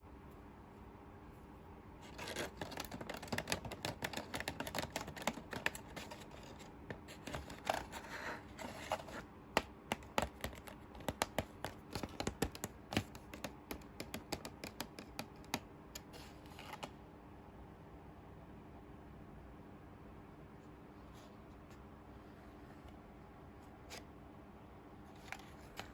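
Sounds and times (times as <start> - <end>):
toy packaging scratching and rustling: 2.0 - 9.3.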